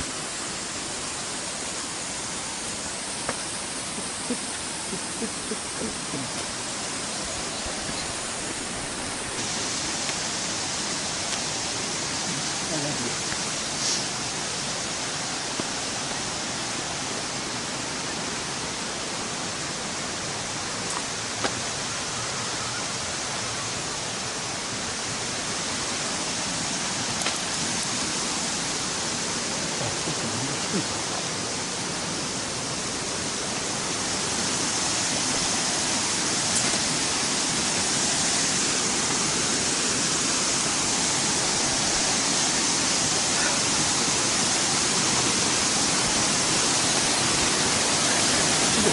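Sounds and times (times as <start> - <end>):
running water rushing: 0.0 - 48.9.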